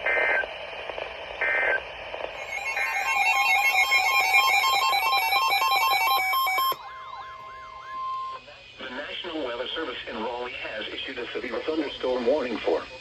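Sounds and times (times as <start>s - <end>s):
warbling electronic attention tone: 2.4s - 8.4s
digital data bursts: 2.4s - 9.9s.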